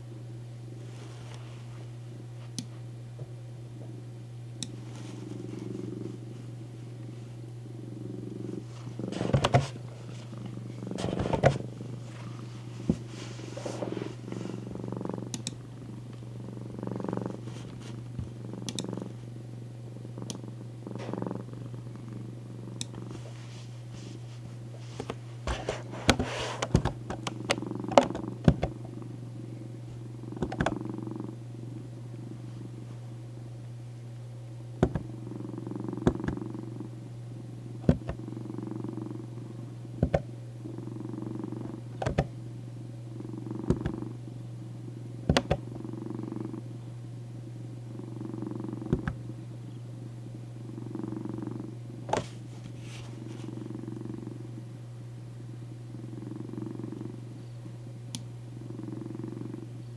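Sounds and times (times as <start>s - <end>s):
steady low hum: 0.0s - 59.9s
cat purring: 3.8s - 54.8s, 55.5s - 59.9s
sharp clicks: 15.3s - 15.6s, 18.6s - 18.9s, 30.4s - 30.8s.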